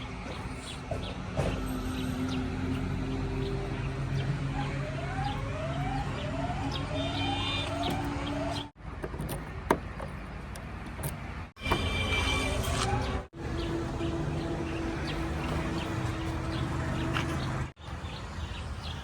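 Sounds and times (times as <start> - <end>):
diesel engine running: 0.0 - 9.6.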